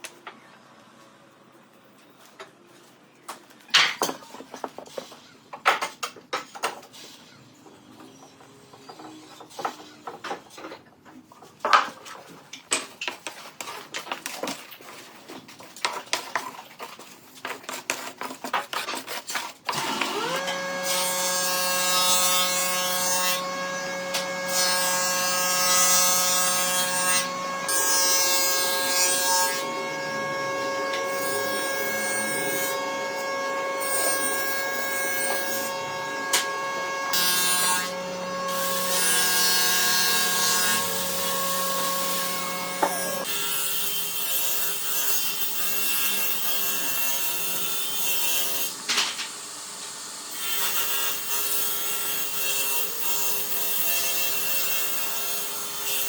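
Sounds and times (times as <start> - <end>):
power tool cutting wood: 19.7 - 56.0.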